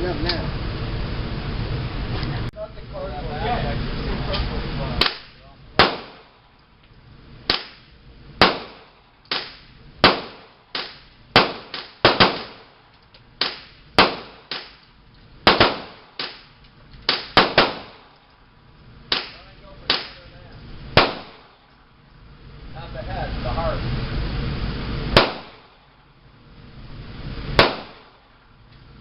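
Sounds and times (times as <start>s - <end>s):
gunshots with echo: 5.0s - 6.3s, 8.4s - 12.7s, 13.4s - 14.8s, 15.5s - 16.4s, 17.1s - 18.1s, 21.0s - 21.5s, 25.2s - 25.7s, 27.6s - 28.2s.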